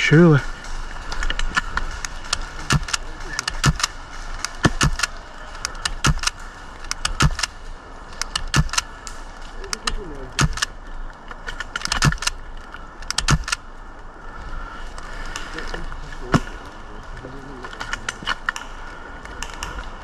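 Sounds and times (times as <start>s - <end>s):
airsoft gun shots: 7.1s - 7.5s, 8.4s - 8.8s, 13.2s - 13.5s.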